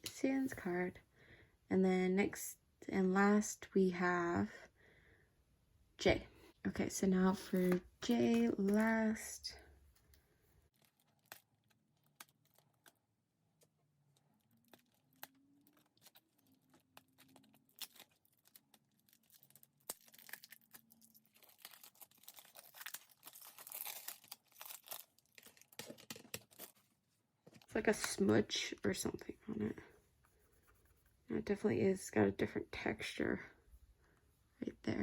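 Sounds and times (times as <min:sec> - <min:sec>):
plastic wrapping tearing and crinkling: 0:10.7 - 0:13.1, 0:14.3 - 0:26.8.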